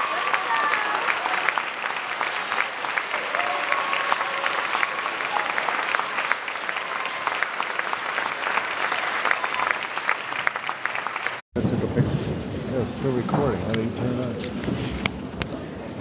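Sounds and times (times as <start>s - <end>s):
audience applauding: 0.0s - 11.4s.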